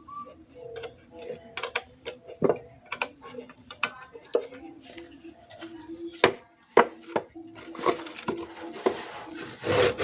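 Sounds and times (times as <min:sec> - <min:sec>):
hand saw rasping on wood: 0:09.4 - 0:10.0.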